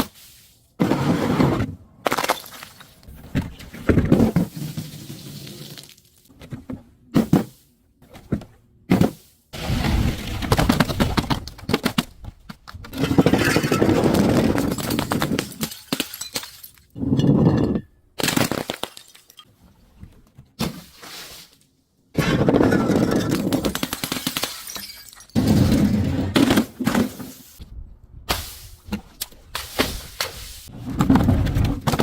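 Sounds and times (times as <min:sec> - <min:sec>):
glass shards crunching: 0:14.7 - 0:16.9, 0:24.1 - 0:25.4.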